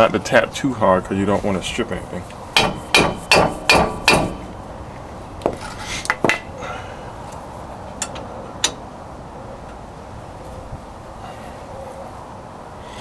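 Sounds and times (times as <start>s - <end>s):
metal knocks on wheel hub: 2.6s - 4.6s.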